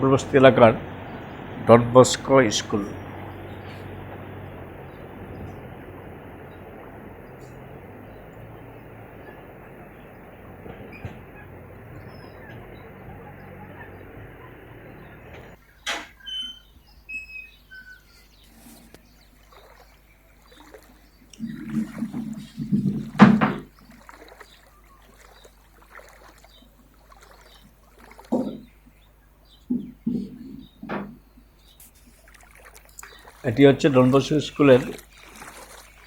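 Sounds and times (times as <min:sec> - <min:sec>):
floodwater splashing and sloshing: 0:00.0 - 0:36.0
short bird chirps: 0:16.2 - 0:30.7.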